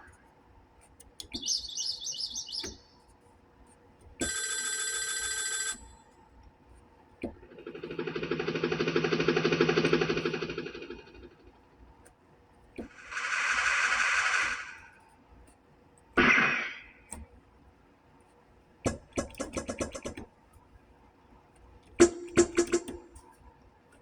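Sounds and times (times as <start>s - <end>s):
fast run of clicks: 7.6s - 11.4s, 18.9s - 20.3s
keyboard hissing noise burst: 12.9s - 14.9s
keyboard sharp hit: 16.2s - 17.0s.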